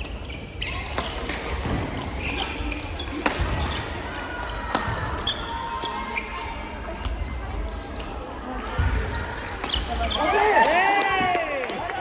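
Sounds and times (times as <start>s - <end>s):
background murmur: 0.0s - 12.0s.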